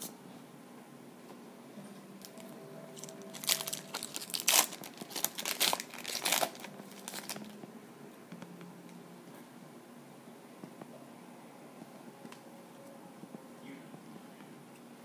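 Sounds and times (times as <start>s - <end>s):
wrapper tearing and crinkling: 3.0s - 7.6s.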